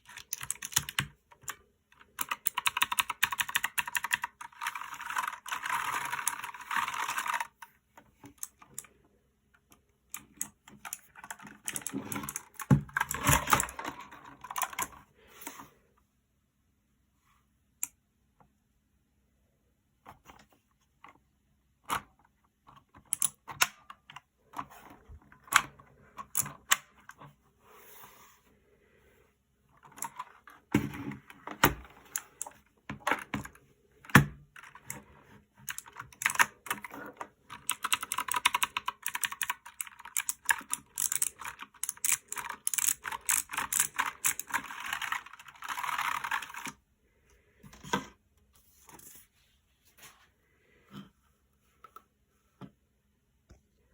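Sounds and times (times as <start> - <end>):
typing on clicky mechanical keyboard: 0.0 - 7.6, 35.6 - 46.8.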